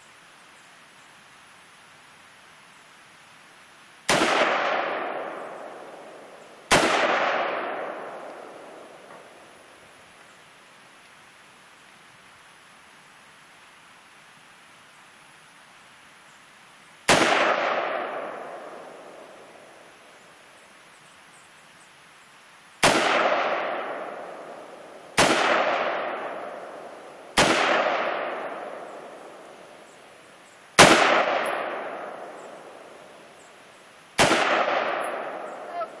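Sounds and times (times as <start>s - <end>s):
rifle shots with echo: 4.1s - 9.3s, 17.1s - 19.6s, 22.8s - 29.5s, 30.8s - 33.0s, 34.2s - 35.9s.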